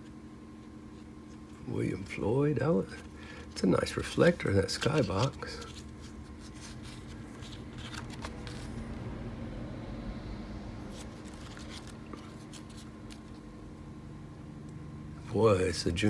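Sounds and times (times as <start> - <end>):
low steady hum: 0.0 - 16.0
trading cards clicking and rustling: 2.8 - 9.0, 10.9 - 13.6.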